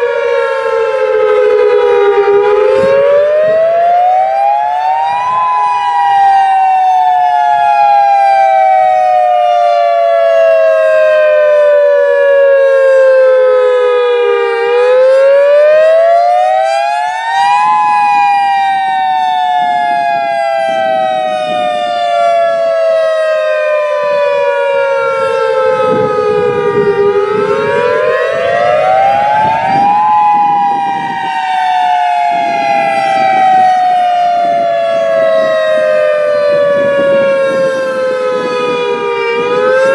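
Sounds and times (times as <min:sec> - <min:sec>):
warning siren wailing: 0:00.0 - 0:39.9.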